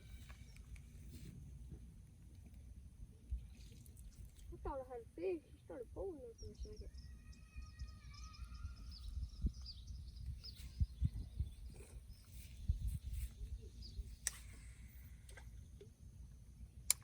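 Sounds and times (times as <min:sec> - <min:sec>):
faint bird chirps: 0:05.4 - 0:15.9.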